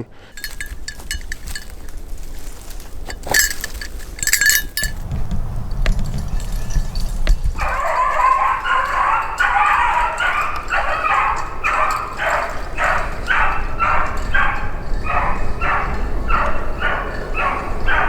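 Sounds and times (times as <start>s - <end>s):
dog barking: 7.5s - 18.0s.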